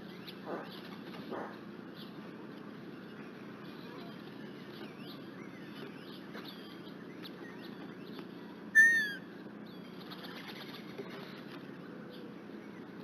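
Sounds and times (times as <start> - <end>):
birds whistling and chirping: 3.0 - 11.2
loud falling whistled bird call: 8.8 - 9.3.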